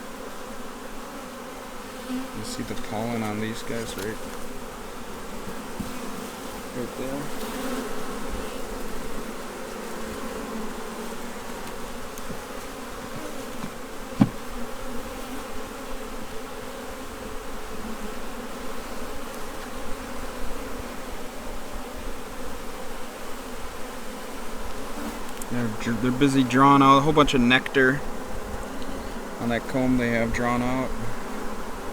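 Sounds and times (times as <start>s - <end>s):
bees buzzing: 0.0s - 31.9s
sharp knock: 13.6s - 14.4s.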